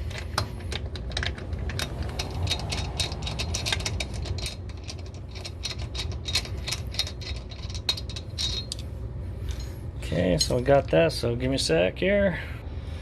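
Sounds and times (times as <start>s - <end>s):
socket ratchet clicking rapidly: 0.7s - 8.3s.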